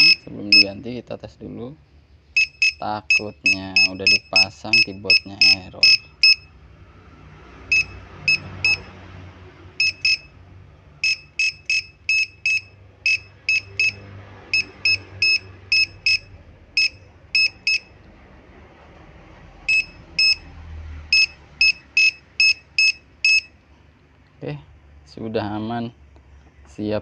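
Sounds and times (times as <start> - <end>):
short high beeps: 0.0 - 0.8, 2.4 - 6.5, 7.7 - 8.9, 9.8 - 10.3, 11.0 - 14.0, 14.6 - 17.9, 19.7 - 20.4, 21.1 - 23.6.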